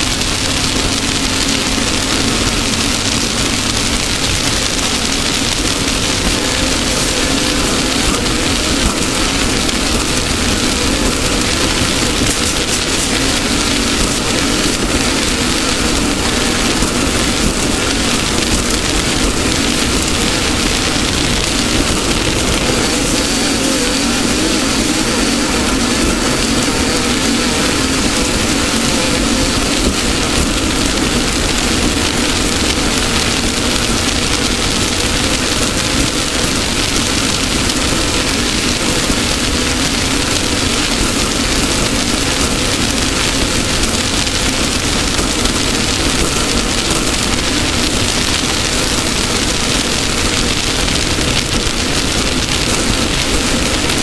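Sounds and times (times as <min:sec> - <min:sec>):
loud even rushing noise: 0:00.0 - 0:54.0
race car engine running: 0:00.0 - 0:54.0.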